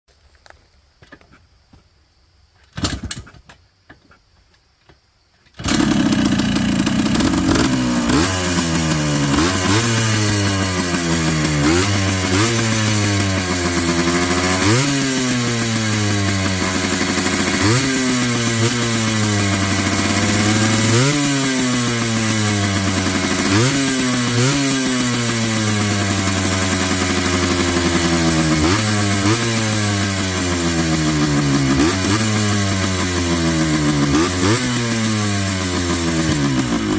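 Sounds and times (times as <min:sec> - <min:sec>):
atv engine revving: 0:05.6 - 0:36.9.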